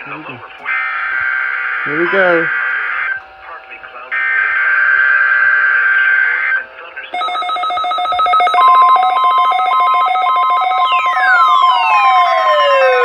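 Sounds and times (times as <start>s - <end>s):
buzzy tone: 7.2s - 13.0s
falling siren-like sweep: 7.2s - 13.0s
fast pulsing electronic alarm: 7.2s - 13.0s
steady tone: 7.2s - 13.0s.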